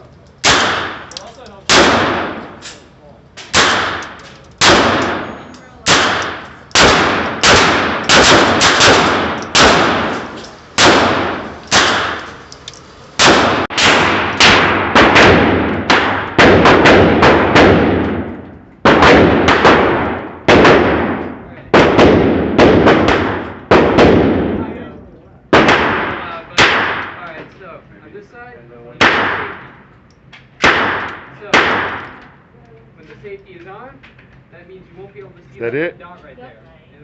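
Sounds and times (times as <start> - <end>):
semi-automatic gunshots echoing: 0.4 - 2.7, 3.5 - 12.4, 13.2 - 24.7, 25.5 - 27.2, 29.0 - 29.8, 30.6 - 32.2.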